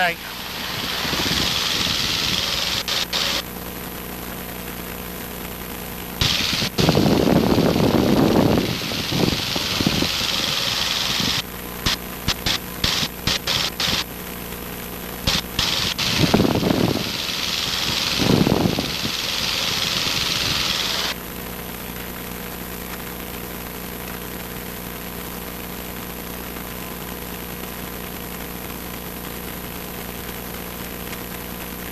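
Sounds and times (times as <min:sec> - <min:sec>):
airplane engine drone: 0:00.0 - 0:03.6, 0:06.1 - 0:14.2, 0:15.0 - 0:21.2
bursts of hiss and rumble: 0:00.0 - 0:31.9.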